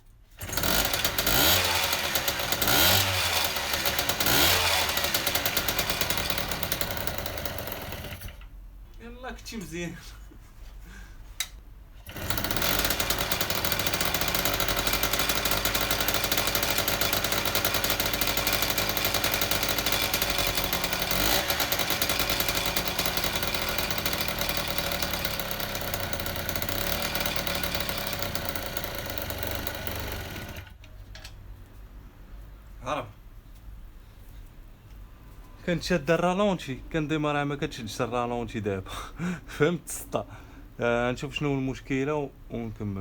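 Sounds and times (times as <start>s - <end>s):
moped two-stroke engine running: 0.4s - 8.4s, 12.0s - 30.8s.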